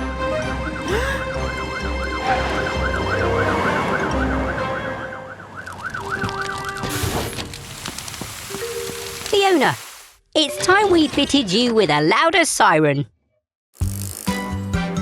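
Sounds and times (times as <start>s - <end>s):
cartoon siren wailing: 0.5s - 6.6s.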